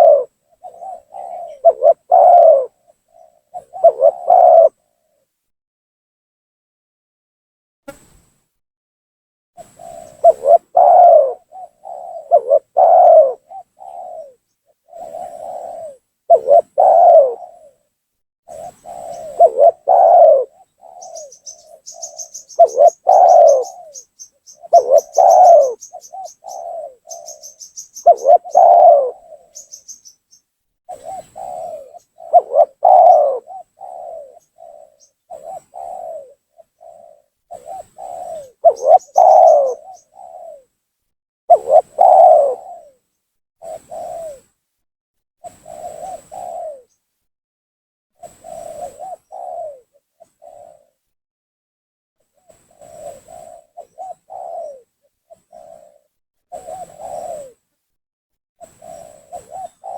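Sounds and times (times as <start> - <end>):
small bird twittering: 0.0 - 4.7, 18.6 - 40.6
dove cooing: 0.0 - 5.2, 9.7 - 17.9, 18.5 - 30.2, 30.9 - 40.8, 41.5 - 43.0, 43.6 - 44.5, 45.4 - 46.9, 48.2 - 51.0, 52.6 - 57.6, 58.6 - 59.9.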